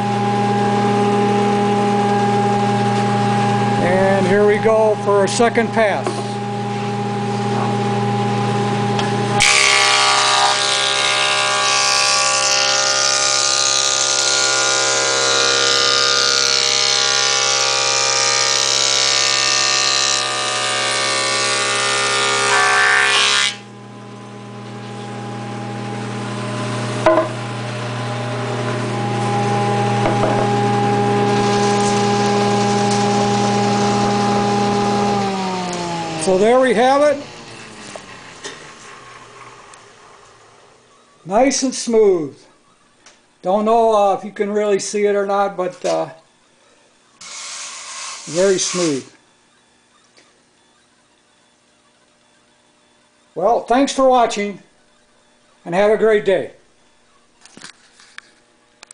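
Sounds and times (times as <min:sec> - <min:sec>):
planer cutting wood: 0:00.0 - 0:23.8, 0:24.4 - 0:40.9, 0:47.2 - 0:49.2
planer motor humming: 0:00.0 - 0:41.3, 0:47.0 - 0:54.2
knock: 0:30.0 - 0:30.5.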